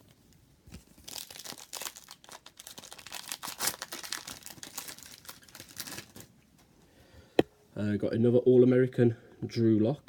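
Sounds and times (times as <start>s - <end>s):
wrapper crinkling and tearing: 0.7s - 6.3s.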